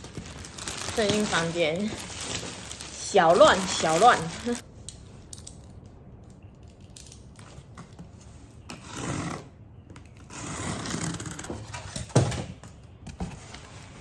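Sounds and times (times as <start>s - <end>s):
packaging scraping and rustling: 0.0s - 4.6s.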